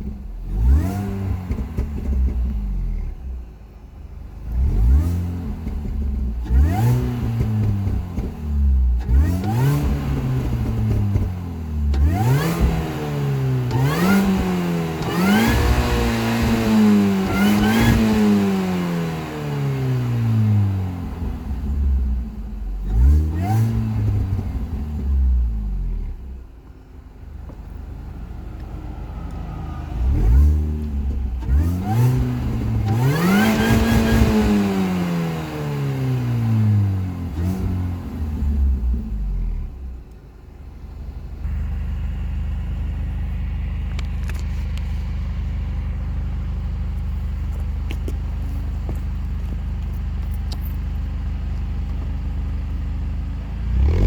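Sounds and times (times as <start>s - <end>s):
car engine revving: 0.0s - 3.3s, 4.4s - 26.4s, 27.1s - 49.6s, 52.5s - 54.0s
car engine idling: 0.0s - 53.9s
faint high supercharger whine: 13.2s - 34.2s, 35.9s - 54.0s.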